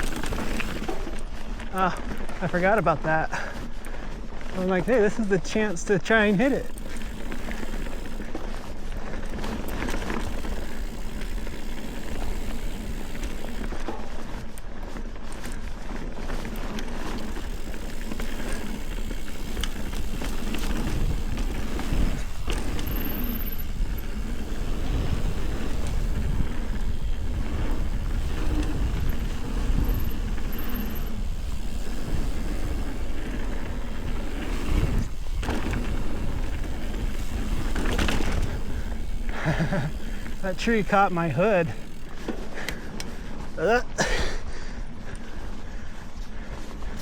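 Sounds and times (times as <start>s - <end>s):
bike knocks and rattles: 0.0s - 1.2s, 9.4s - 14.4s, 16.2s - 42.5s
bike tyre noise: 0.0s - 47.0s.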